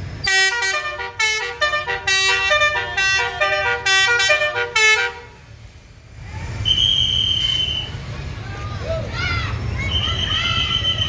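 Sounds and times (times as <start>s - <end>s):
bus horn playing a tune: 0.2s - 5.4s.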